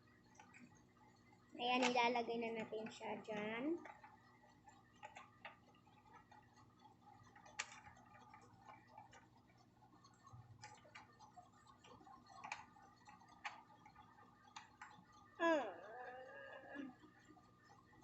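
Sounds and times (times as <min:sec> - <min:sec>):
plastic parts clicking: 0:07.3 - 0:09.4, 0:11.9 - 0:13.7.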